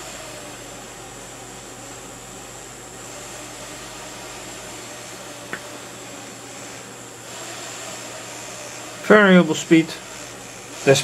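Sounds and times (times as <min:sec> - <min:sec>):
small electric motor whirring: 0:00.0 - 0:11.0.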